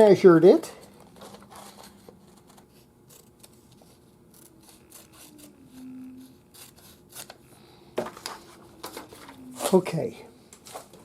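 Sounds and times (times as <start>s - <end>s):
short low hum: 3.5s - 10.6s.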